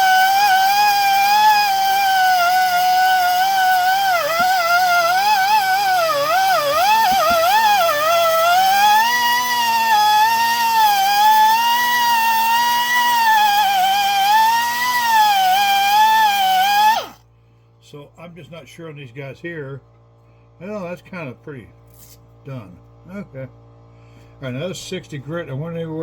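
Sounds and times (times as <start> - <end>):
rotary tool whining: 0.0 - 17.2.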